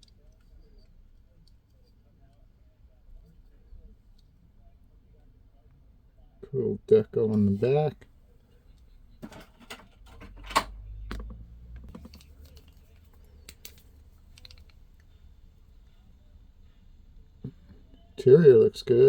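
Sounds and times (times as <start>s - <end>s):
toy car clicks and taps: 13.4s - 14.8s.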